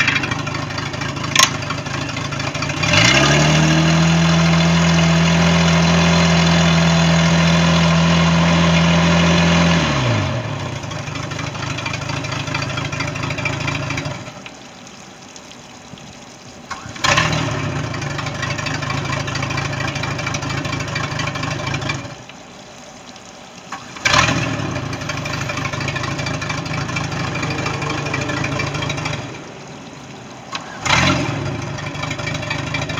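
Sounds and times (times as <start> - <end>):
boat engine idling: 0.0 - 14.4, 16.9 - 22.3, 23.9 - 32.9
engine starting: 16.7 - 18.8, 23.7 - 32.9.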